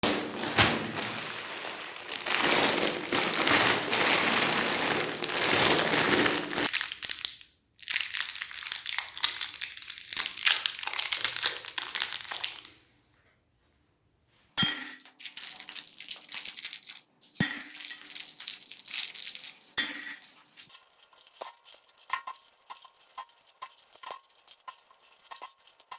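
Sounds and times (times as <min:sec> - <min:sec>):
candy wrappers crinkling: 0:00.0 - 0:12.8, 0:15.0 - 0:19.8, 0:20.4 - 0:25.9
hard pieces clinking: 0:17.2 - 0:18.4, 0:19.8 - 0:20.4.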